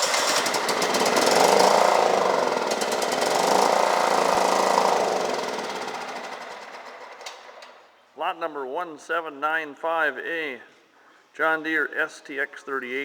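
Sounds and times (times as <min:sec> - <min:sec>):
mower engine running: 0:00.0 - 0:07.7.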